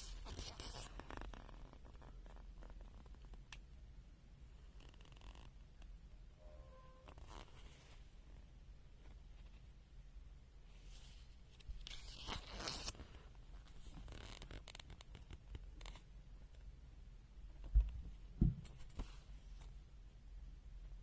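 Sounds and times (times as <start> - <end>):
dull knocks: 17.8 - 18.8.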